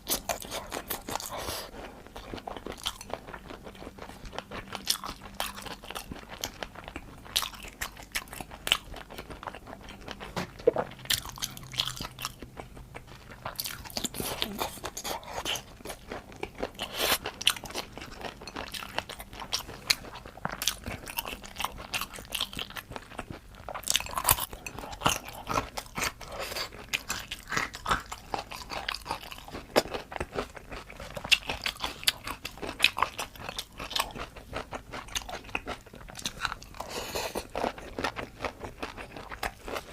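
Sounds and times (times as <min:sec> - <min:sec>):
crunchy food chewing: 0:00.0 - 0:39.9.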